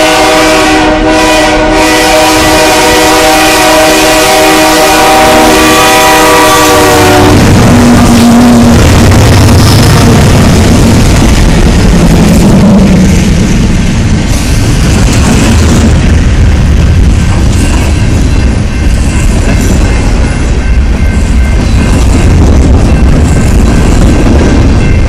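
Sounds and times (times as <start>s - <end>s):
locomotive air horn chord: 0.0s - 8.3s
train passing with low rumble: 0.0s - 25.0s.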